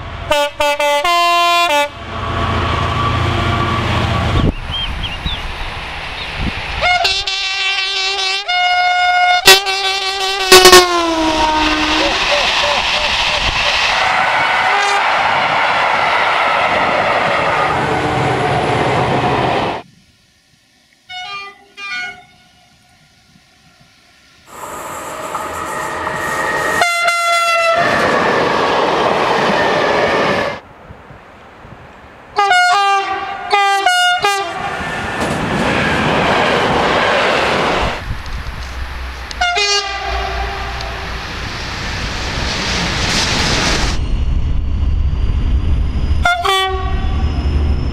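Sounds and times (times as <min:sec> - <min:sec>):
train passing: 0:00.0 - 0:47.9
train horn blasts: 0:00.3 - 0:02.1, 0:06.8 - 0:12.2, 0:14.6 - 0:15.1, 0:21.1 - 0:22.7, 0:24.5 - 0:28.0, 0:32.4 - 0:34.7, 0:39.4 - 0:41.0, 0:46.2 - 0:47.2.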